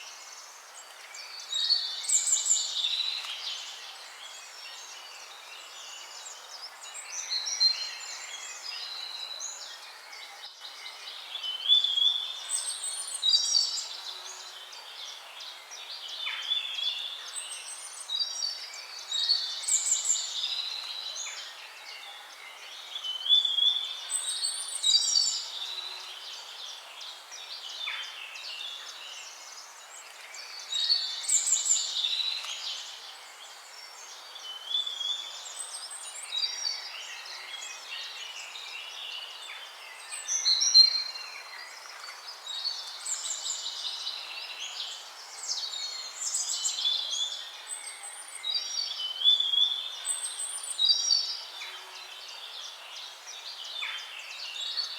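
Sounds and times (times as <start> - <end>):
songbirds singing: 0.0 - 54.9.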